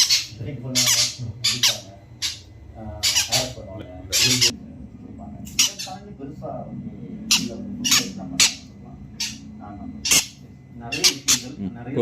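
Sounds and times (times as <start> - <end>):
parrot piercing calls: 0.0 - 4.5, 5.5 - 6.0, 7.3 - 11.6
faint low hum: 0.0 - 12.0.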